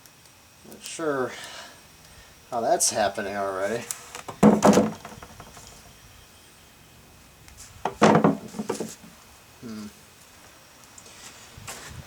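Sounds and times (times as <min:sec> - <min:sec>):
potatoes knocking: 0:04.3 - 0:05.8, 0:07.9 - 0:09.1.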